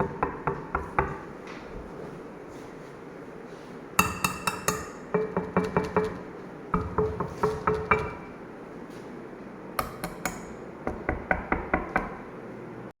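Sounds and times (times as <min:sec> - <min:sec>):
ring tapping on marble: 0:04.0 - 0:06.2.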